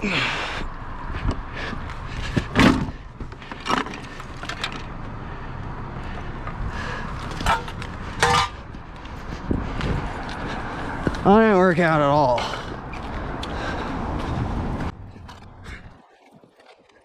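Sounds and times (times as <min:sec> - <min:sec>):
traffic rumble: 0:00.0 - 0:17.0.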